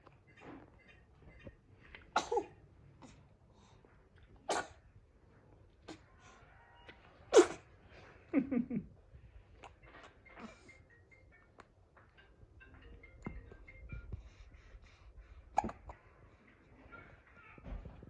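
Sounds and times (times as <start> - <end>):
baby sneezing: 4.5 - 4.8, 7.3 - 7.7.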